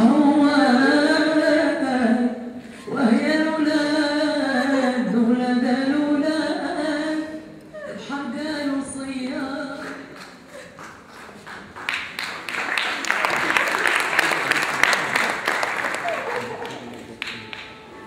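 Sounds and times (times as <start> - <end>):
person singing unaccompanied: 0.0 - 10.0.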